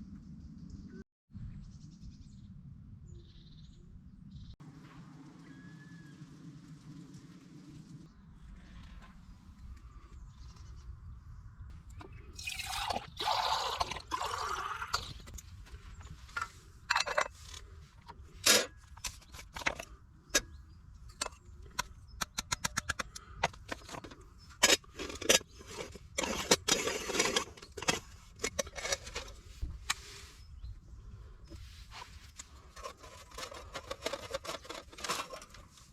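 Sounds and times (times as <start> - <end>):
handling scrapes and knocks: 13.8 - 20.5, 21.1 - 30.5, 31.5 - 35.9.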